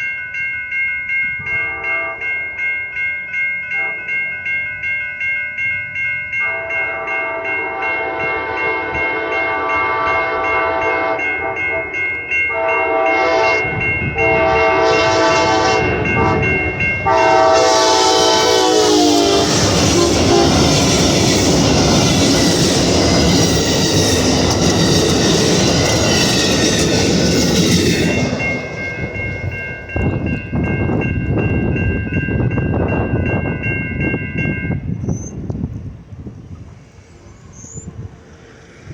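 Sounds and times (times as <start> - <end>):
steady high ringing tone: 0.0 - 35.1
passing train rush and wheel clatter: 0.0 - 38.9
locomotive horn blasts: 1.4 - 2.5, 3.7 - 4.2, 6.4 - 21.0.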